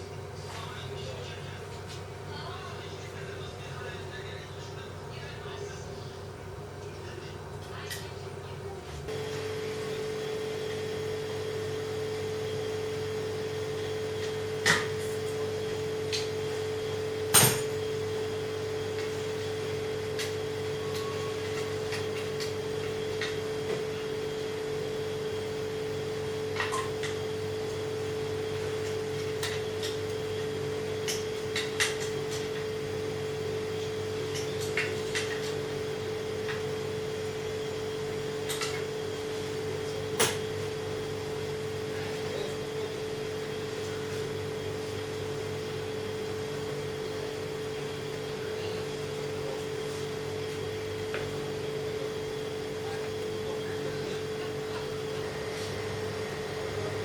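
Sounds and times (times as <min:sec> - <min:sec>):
machine hum: 0:00.0 - 0:57.0.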